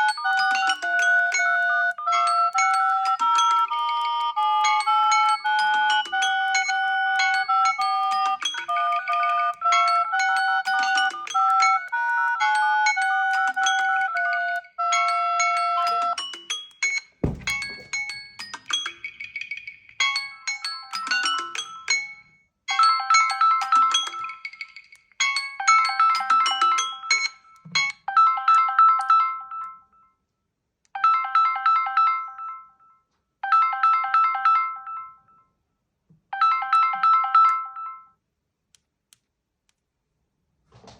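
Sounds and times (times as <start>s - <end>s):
smartphone ringtone melody: 0.0s - 16.6s, 17.2s - 18.0s, 25.6s - 30.1s, 31.0s - 35.5s, 36.4s - 38.2s.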